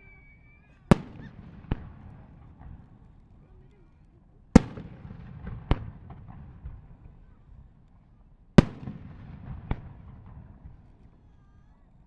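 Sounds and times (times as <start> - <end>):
low rumbling echo: 0.0 - 3.4, 4.5 - 7.6, 8.6 - 11.0
fireworks bursting: 0.0 - 3.8, 4.5 - 7.3, 8.6 - 11.1.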